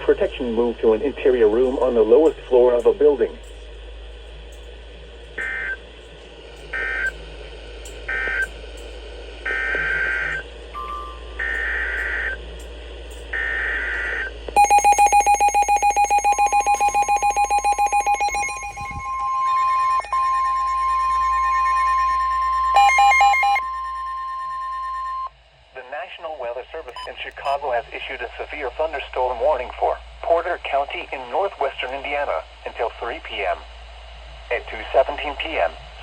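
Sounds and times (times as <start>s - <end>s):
steady alarm tone: 0.0s - 25.4s
screeching digital data bursts: 13.3s - 25.3s
rapidly pulsing alert beeps: 14.6s - 25.3s.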